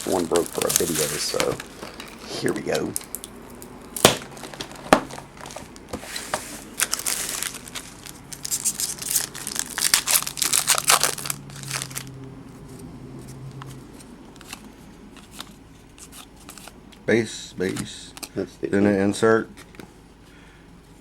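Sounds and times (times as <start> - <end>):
wrapper crinkling and tearing: 0.0 - 5.9, 6.6 - 12.2.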